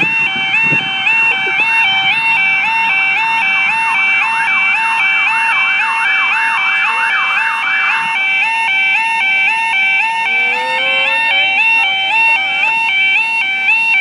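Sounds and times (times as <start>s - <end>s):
two-tone electronic crossing alarm: 0.0s - 14.0s
sweeping electronic warble: 10.0s - 13.2s.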